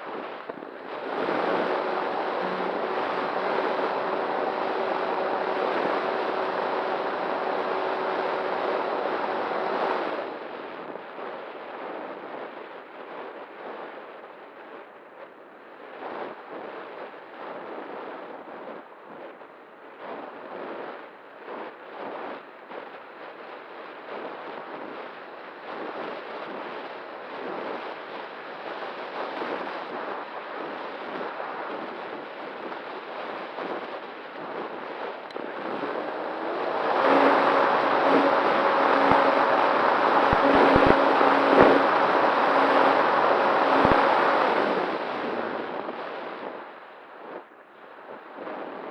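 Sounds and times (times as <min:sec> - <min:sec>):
airflow rushing over microphone: 0:00.0 - 0:11.2, 0:28.9 - 0:47.5
steady hum: 0:00.0 - 0:11.6, 0:28.5 - 0:48.5.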